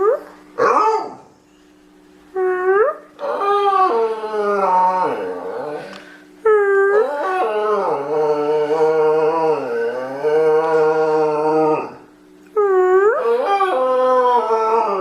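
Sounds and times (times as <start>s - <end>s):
dog howling: 2.7s - 6.0s, 6.6s - 15.0s.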